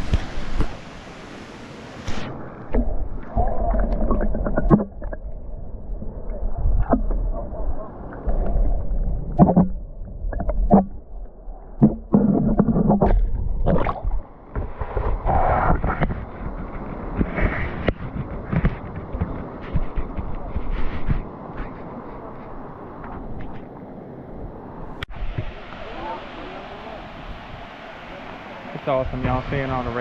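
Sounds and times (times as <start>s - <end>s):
wind buffeting microphone: 11.7s - 23.6s.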